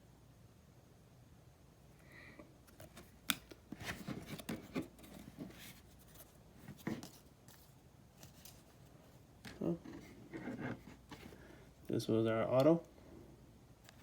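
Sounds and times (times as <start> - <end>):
trading cards scraping and rustling: 2.7 - 11.4.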